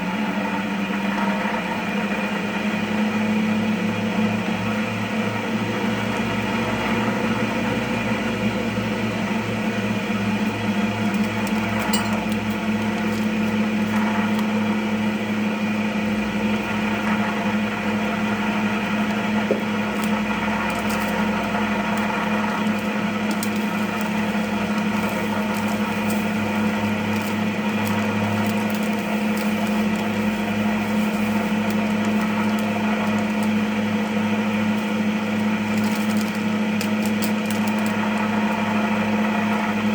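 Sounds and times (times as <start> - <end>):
cotton candy machine motor humming: 0.0 - 39.9.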